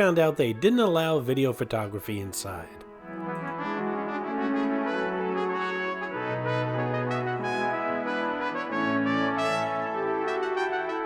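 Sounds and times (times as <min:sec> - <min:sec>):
brass ensemble playing chords: 0:00.0 - 0:11.0.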